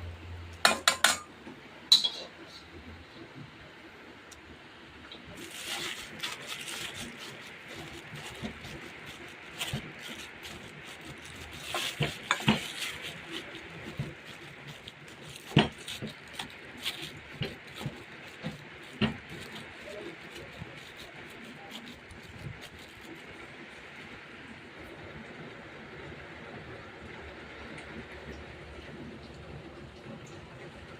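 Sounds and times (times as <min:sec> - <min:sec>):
utensil stirring and scraping: 0:05.3 - 0:24.0.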